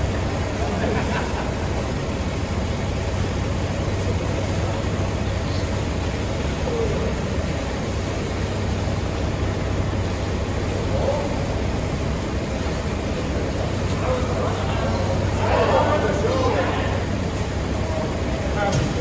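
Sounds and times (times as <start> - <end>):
engine droning steadily: 0.0 - 19.0
faint voices: 10.8 - 19.0.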